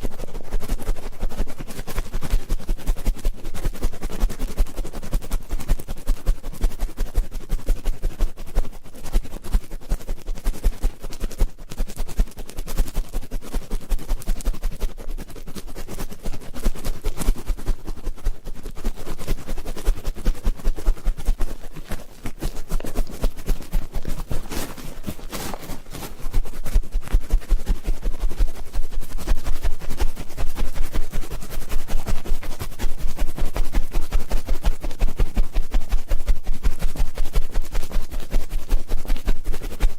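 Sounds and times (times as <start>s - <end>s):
ear-cleaning tool scraping: 21.8s - 26.4s.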